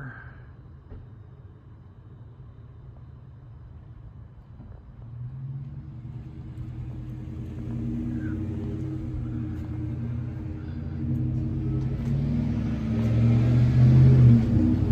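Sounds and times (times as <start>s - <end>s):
low engine rumble: 0.0s - 14.9s.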